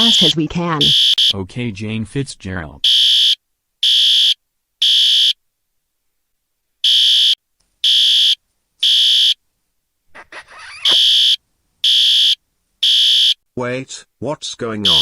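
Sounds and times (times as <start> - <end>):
fire alarm beeps: 0.0 - 1.3.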